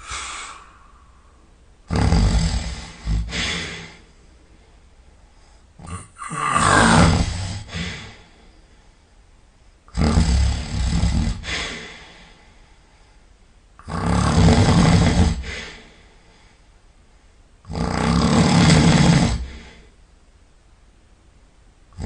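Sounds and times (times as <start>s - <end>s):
person snoring loudly: 0.0s - 1.1s, 1.9s - 4.0s, 5.8s - 8.1s, 9.9s - 11.9s, 13.8s - 15.8s, 17.7s - 19.8s.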